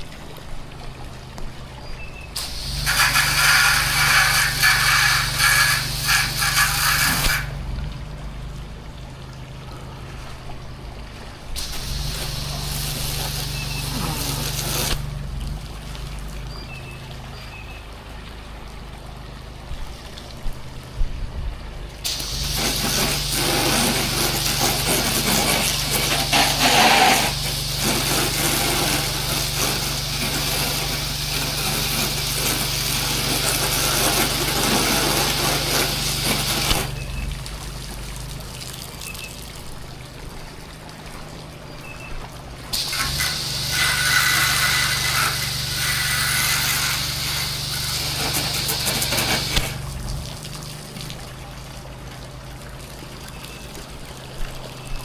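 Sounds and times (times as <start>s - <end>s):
water spray hissing: 2.3s - 7.8s, 11.5s - 15.6s, 22.0s - 39.7s, 42.7s - 51.3s
pressure washer running: 2.4s - 8.6s, 11.6s - 16.2s, 22.0s - 39.8s, 42.5s - 53.3s.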